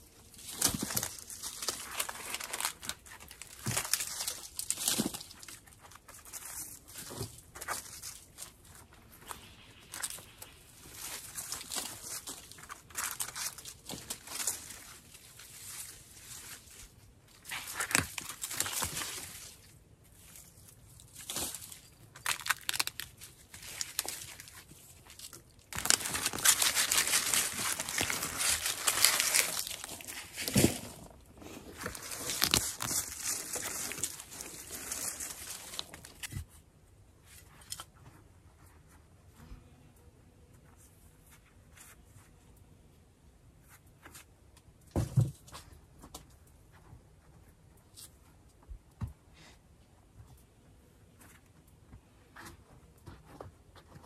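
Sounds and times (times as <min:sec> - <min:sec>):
rustling and crunching of plants: 0:00.0 - 0:39.0.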